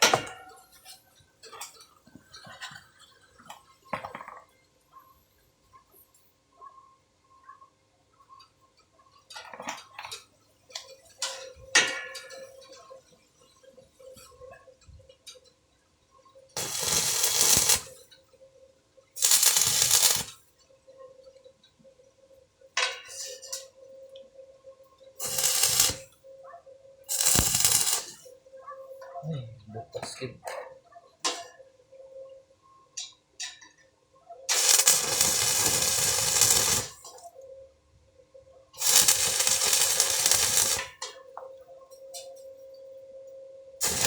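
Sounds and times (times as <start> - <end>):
arc welding bursts: 16.6 - 18.0, 19.2 - 20.4, 25.2 - 26.1, 27.1 - 28.3, 34.5 - 37.2, 38.8 - 41.0.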